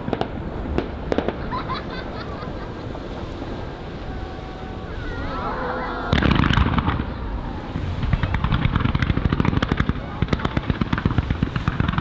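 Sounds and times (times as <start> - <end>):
firework bang: 0.0 - 5.2, 6.0 - 12.0
firework crackling bursts: 0.0 - 12.0.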